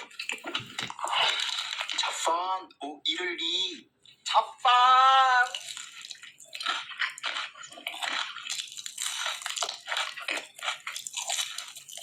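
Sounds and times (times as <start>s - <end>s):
wet chewing mouth sounds: 5.4s - 12.0s.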